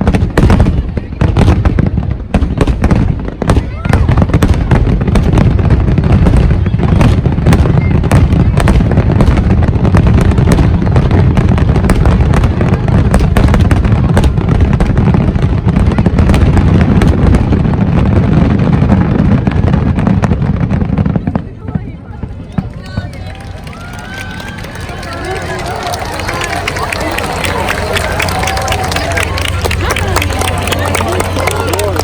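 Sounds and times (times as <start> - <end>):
low rumble of booms: 0.0 - 21.4
fireworks bangs and crackles: 0.0 - 32.0.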